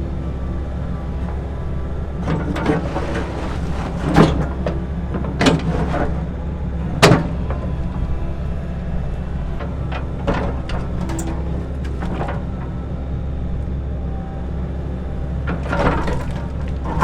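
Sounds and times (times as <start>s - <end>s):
diesel excavator engine running: 0.0s - 17.0s
concrete cracking and knocking: 1.2s - 6.3s, 9.5s - 12.8s, 15.5s - 17.0s.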